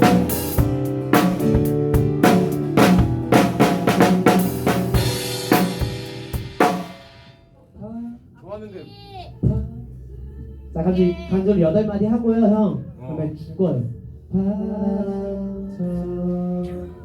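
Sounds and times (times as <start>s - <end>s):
live band playing: 0.0s - 7.3s
drum kit groove: 0.0s - 7.4s
cymbal wash: 4.4s - 7.6s.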